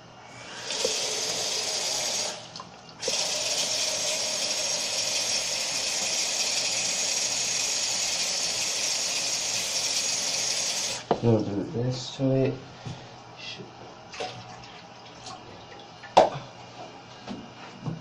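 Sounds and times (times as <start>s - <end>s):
water hissing through toilet valve: 0.4s - 11.1s.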